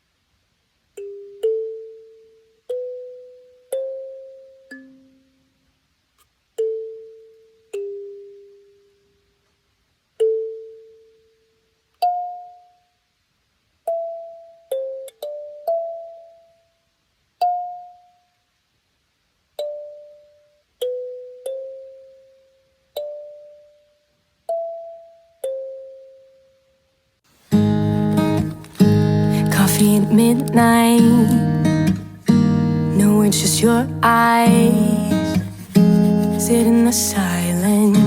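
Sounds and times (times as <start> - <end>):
music with guitar: 27.5 - 38.0.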